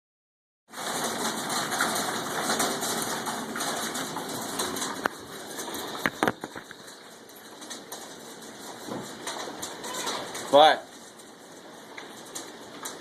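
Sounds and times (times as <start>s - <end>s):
hail and rain pelting down: 0.7s - 13.0s.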